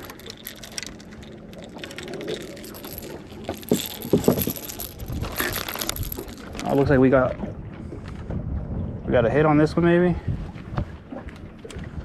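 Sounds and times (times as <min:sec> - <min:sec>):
fishing tackle clicking and rattling: 0:00.0 - 0:07.1.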